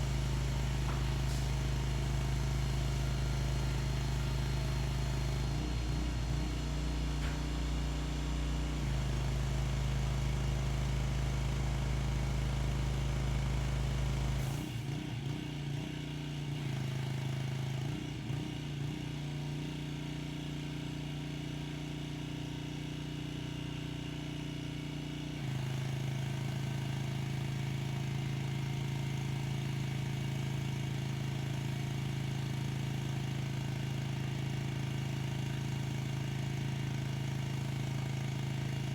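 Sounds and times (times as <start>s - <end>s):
pressure washer engine running: 0.0s - 14.6s.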